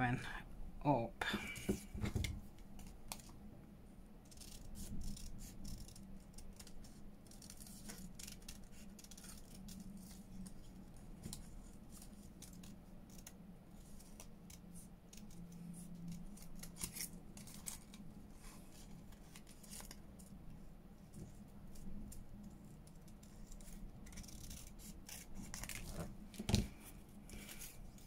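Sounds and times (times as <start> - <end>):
faint steady hum: 0.0 - 28.0
scissors snipping paper: 4.3 - 20.0, 21.3 - 26.7.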